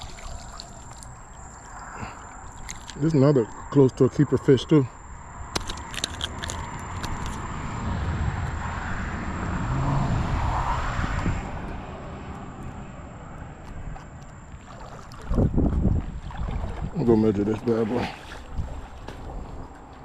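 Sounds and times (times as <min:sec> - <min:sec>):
car passing: 0:00.0 - 0:20.0
sharp clicks: 0:05.5 - 0:07.4.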